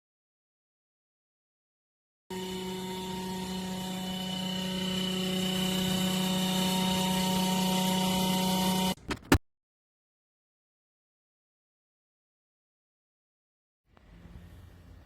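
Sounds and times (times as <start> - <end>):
fridge compressor humming: 2.3 - 9.4.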